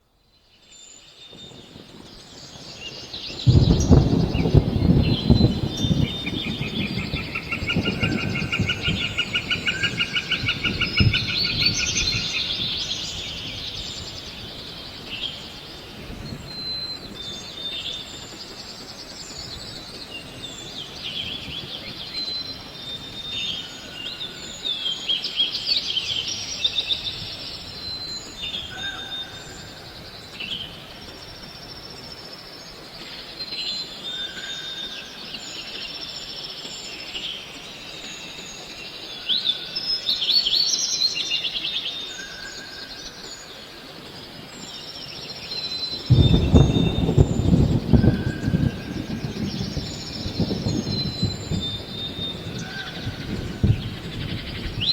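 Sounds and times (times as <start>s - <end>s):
birds chirping and whistling: 2.9s - 30.8s, 44.6s - 54.9s.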